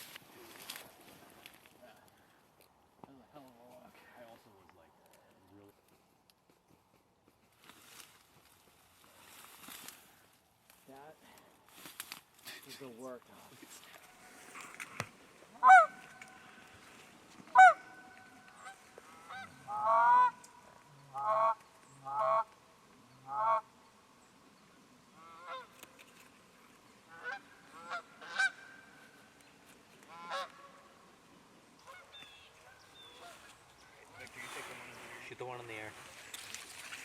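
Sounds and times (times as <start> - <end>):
geese honking: 14.1 - 23.9, 25.2 - 25.8, 27.0 - 29.4, 30.0 - 31.1, 31.8 - 35.9.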